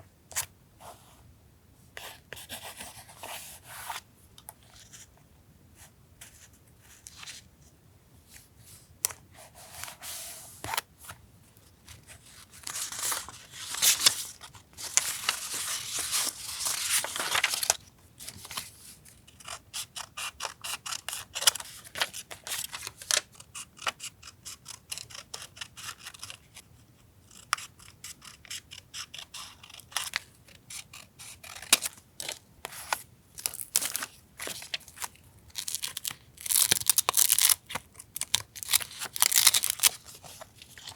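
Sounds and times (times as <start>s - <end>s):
paper rustling and sliding: 12.4s - 18.8s.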